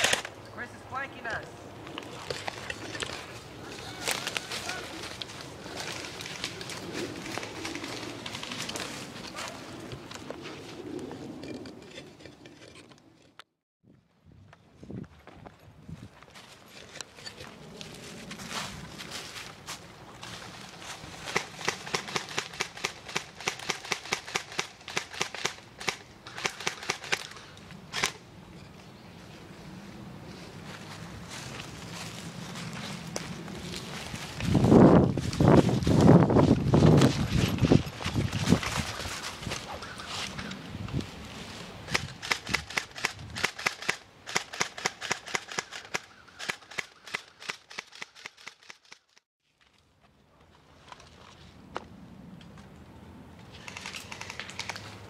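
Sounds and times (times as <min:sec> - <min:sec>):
airsoft guns firing: 0:00.0 - 0:00.3.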